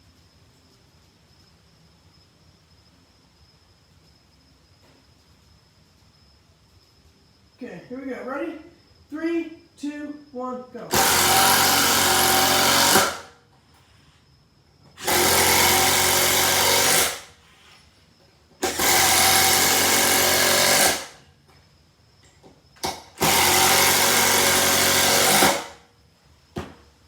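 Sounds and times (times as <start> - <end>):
impact driver hammering rattle: 10.9 - 13.3, 15.0 - 17.3, 18.6 - 21.2, 22.8 - 25.8.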